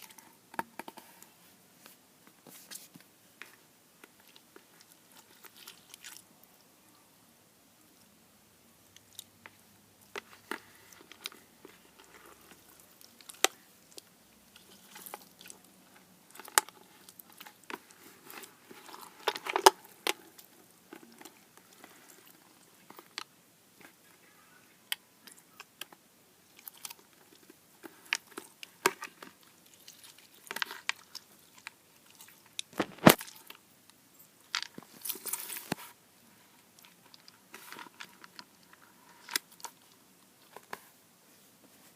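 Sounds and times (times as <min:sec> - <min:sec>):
slime squishing and popping: 0:29.7 - 0:33.4.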